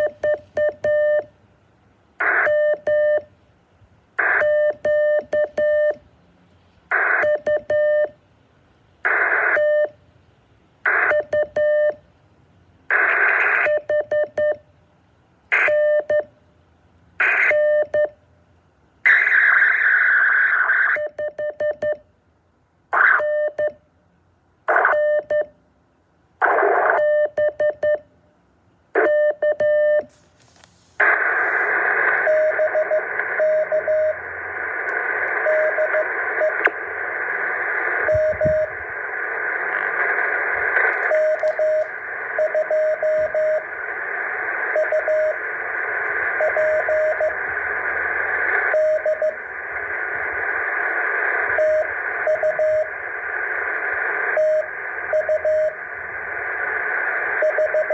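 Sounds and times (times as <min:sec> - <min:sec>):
morse code beeps: 0:00.0 - 0:01.3, 0:02.4 - 0:03.2, 0:04.4 - 0:06.0, 0:07.2 - 0:08.1, 0:13.6 - 0:14.6, 0:15.7 - 0:16.3, 0:17.5 - 0:18.1, 0:24.9 - 0:25.5, 0:27.0 - 0:28.0, 0:29.0 - 0:30.0, 0:32.2 - 0:34.2, 0:35.4 - 0:36.6, 0:38.1 - 0:38.7, 0:41.0 - 0:43.6, 0:44.7 - 0:45.4, 0:46.3 - 0:47.4, 0:48.7 - 0:49.4, 0:51.6 - 0:52.9, 0:54.4 - 0:55.8, 0:57.4 - 0:57.9
radio static: 0:02.2 - 0:02.5, 0:04.2 - 0:04.5, 0:06.9 - 0:07.5, 0:09.1 - 0:09.7, 0:10.9 - 0:11.3, 0:12.9 - 0:13.8, 0:15.5 - 0:15.8, 0:17.2 - 0:17.5, 0:19.0 - 0:21.0, 0:26.4 - 0:27.0, 0:30.1 - 0:57.9.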